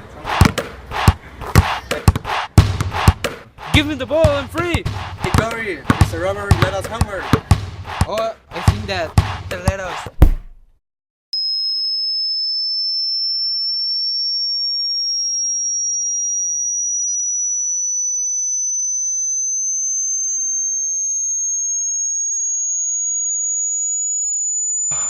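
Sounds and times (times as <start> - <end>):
high ear-ringing tone: 11.4 - 25.0.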